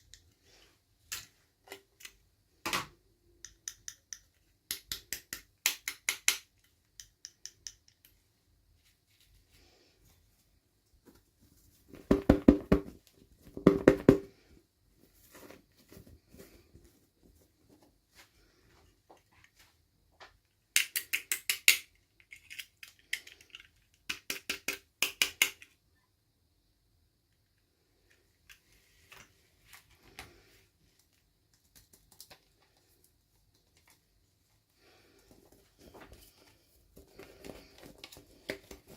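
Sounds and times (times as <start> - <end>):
faint packaging rustling: 28.2 - 38.9.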